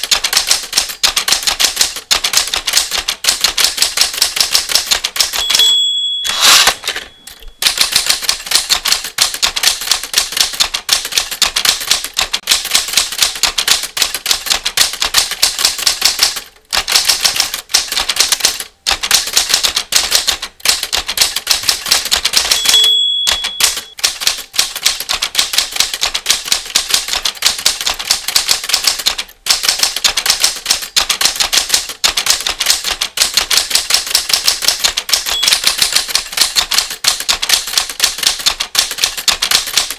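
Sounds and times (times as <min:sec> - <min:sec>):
typewriter carriage return: 0:00.0 - 0:39.9
typewriter keys clicking: 0:00.0 - 0:39.9
typewriter bell ding: 0:05.1 - 0:08.9, 0:21.6 - 0:25.5, 0:35.1 - 0:36.7.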